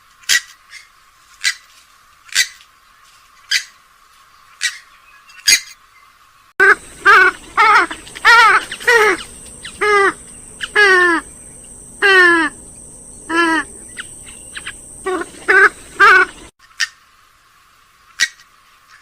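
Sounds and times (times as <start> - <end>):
waterbird nasal wavering calls: 6.6 - 16.9.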